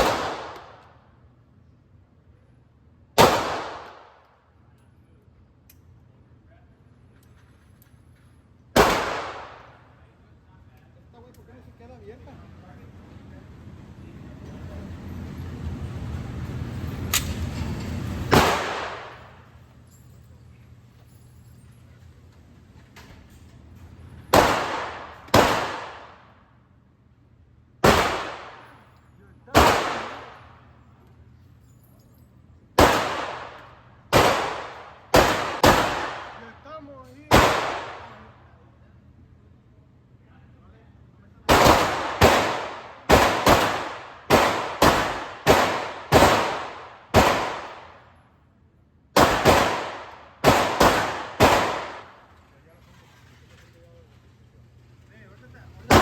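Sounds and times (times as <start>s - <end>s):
handgun shots echoing indoors: 0.0s - 1.2s, 3.2s - 4.5s, 8.8s - 10.0s, 18.3s - 19.4s, 24.2s - 26.4s, 27.8s - 30.6s, 32.8s - 36.6s, 37.3s - 38.4s, 41.5s - 48.2s, 49.1s - 52.4s.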